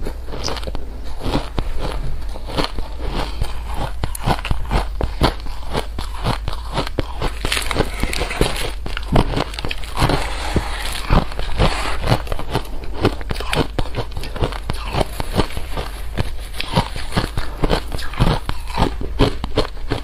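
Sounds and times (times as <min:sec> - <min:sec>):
crunching of crisp food: 0:00.0 - 0:20.0.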